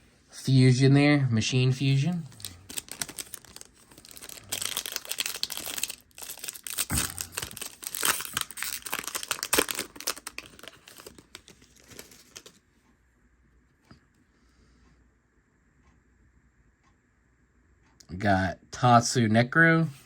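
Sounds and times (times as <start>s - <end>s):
foil wrapper tearing and crinkling: 2.3s - 12.6s.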